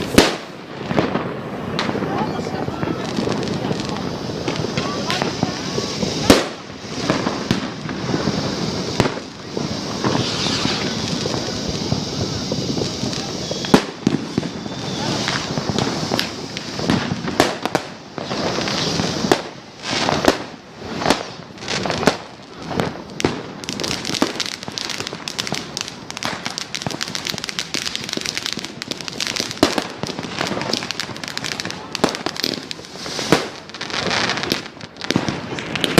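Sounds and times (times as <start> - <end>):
firecracker bangs: 0.0 - 35.9
fireworks crackling: 0.0 - 35.9
fireworks hissing: 0.0 - 35.9.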